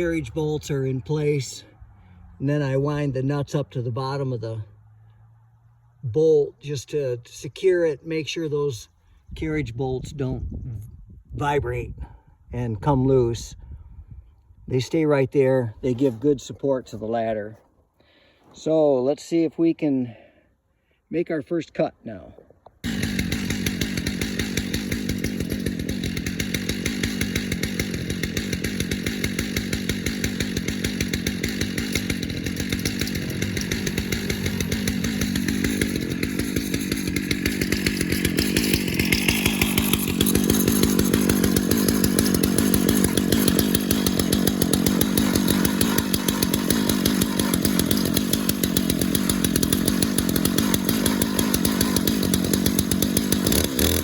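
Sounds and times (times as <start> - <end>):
chainsaw cutting log: 0.0 - 5.2, 15.8 - 17.7, 22.8 - 54.0.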